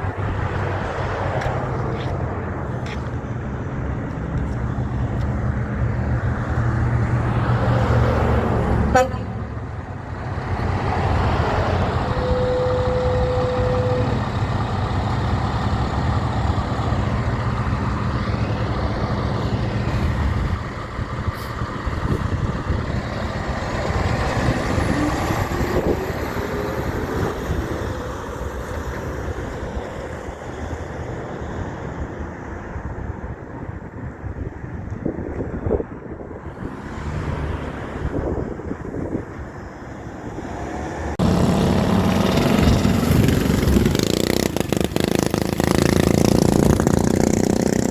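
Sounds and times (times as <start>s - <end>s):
heavy trucks passing: 0.0s - 47.9s
steady single tone: 12.0s - 14.4s.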